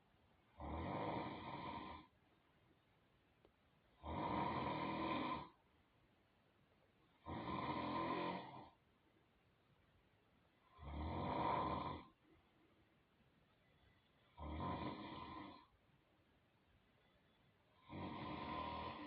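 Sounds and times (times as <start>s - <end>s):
person snoring loudly: 0.6s - 2.1s, 4.0s - 5.6s, 7.2s - 8.8s, 10.8s - 12.1s, 14.4s - 15.7s, 17.8s - 19.0s.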